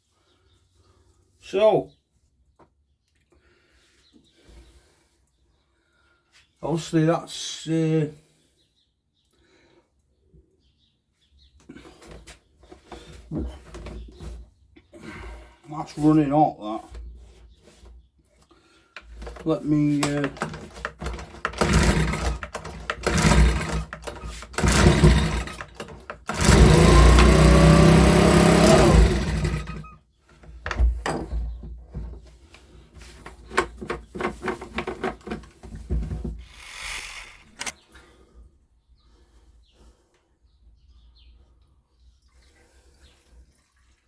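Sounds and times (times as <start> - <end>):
handling clicks and knocks: 19.0 - 26.6
leaf blower engine revving: 21.6 - 29.9, 36.4 - 37.7.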